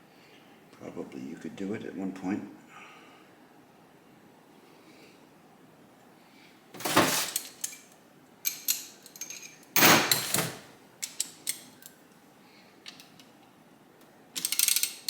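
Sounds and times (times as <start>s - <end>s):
metal tools scraping and clattering: 6.8s - 7.9s, 8.5s - 11.6s.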